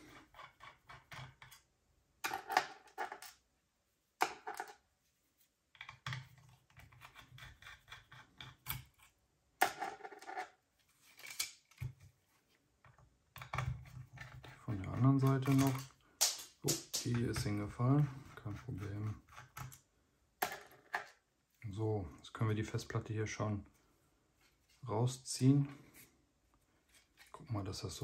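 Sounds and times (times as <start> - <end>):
screwdriver metallic clicks and scrapes: 10.2 - 11.8.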